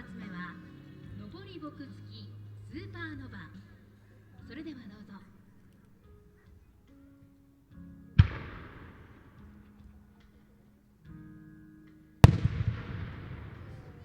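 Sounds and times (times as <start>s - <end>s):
firework shells bursting: 8.2s - 9.5s, 12.2s - 14.0s
rolling echo of booms: 8.2s - 9.6s, 12.2s - 14.0s.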